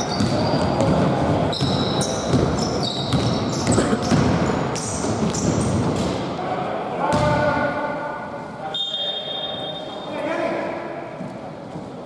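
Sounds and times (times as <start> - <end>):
sneakers squeaking on court: 0.0 - 6.2
basketball bouncing: 0.1 - 6.1.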